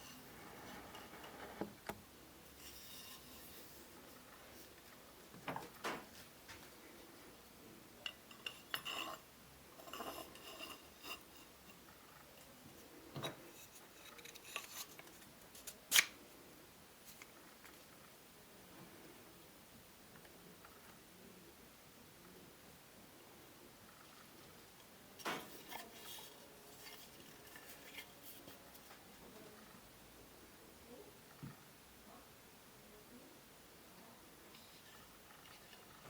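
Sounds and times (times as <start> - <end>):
metal scraping: 2.5 - 4.3.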